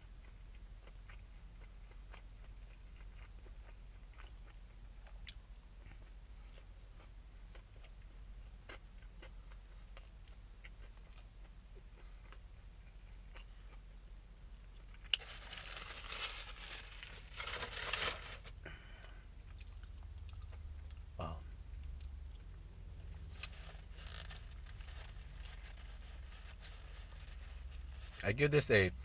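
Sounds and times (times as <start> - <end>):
person chewing with mouth clicks: 0.2 - 14.0, 18.9 - 22.5.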